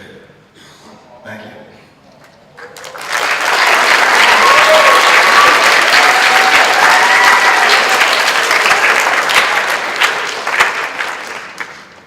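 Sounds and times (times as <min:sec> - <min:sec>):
audience applauding: 0:02.6 - 0:12.0.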